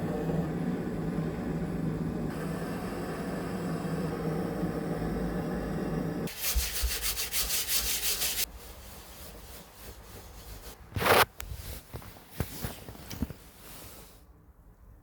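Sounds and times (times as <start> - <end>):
low machine hum: 0.0 - 6.3
sanding on wood: 6.3 - 8.5
loud scrape: 10.4 - 11.9.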